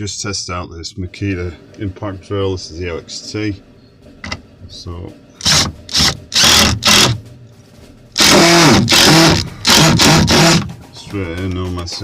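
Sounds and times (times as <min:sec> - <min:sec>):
impact driver driving a screw: 0:05.4 - 0:07.2, 0:08.2 - 0:10.7.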